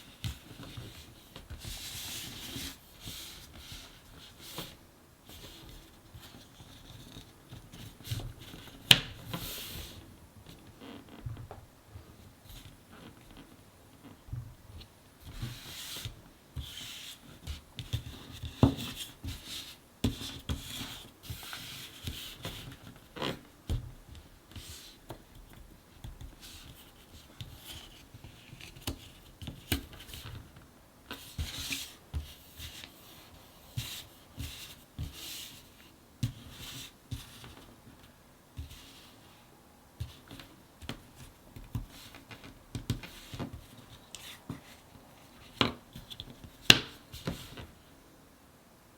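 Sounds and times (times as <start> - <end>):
cardboard puzzle pieces sliding: 0.2 - 10.0.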